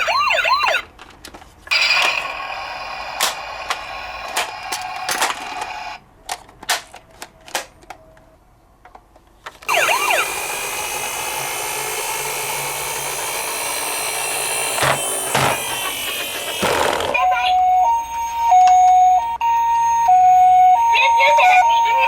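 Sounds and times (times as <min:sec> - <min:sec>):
toy car mechanical whirring: 0:01.7 - 0:06.0, 0:09.7 - 0:17.2.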